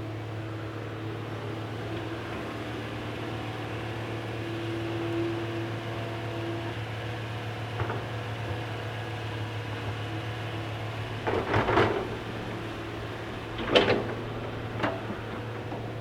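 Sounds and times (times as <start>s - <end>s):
excavator humming: 0.0s - 16.0s
clattering and scraping: 11.2s - 16.0s.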